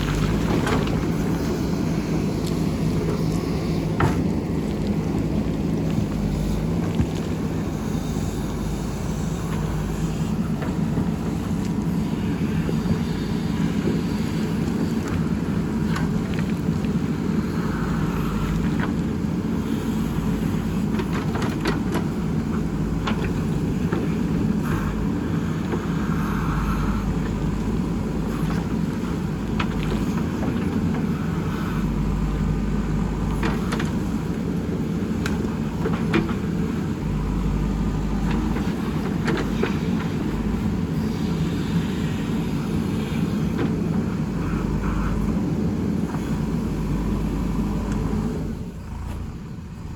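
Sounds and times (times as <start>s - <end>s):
diesel engine running: 0.0s - 49.9s
knocks and clanks: 3.9s - 4.4s.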